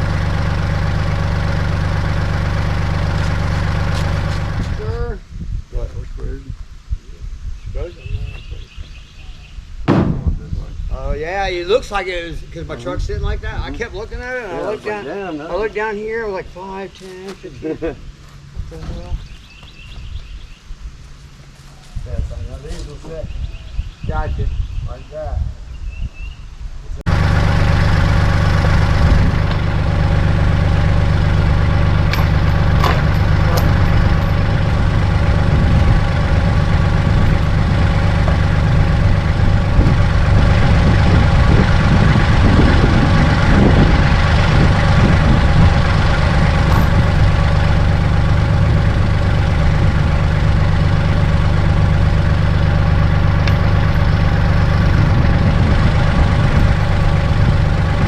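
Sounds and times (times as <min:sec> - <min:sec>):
tractor diesel engine idling: 0:00.0 - 0:05.1, 0:27.1 - 0:58.0.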